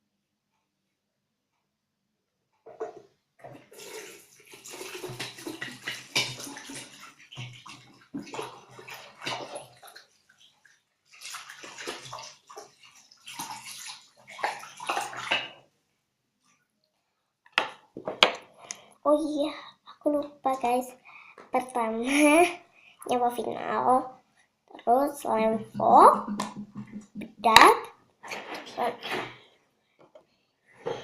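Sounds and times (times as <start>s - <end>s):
water sloshing and splashing: 3.5s - 15.7s.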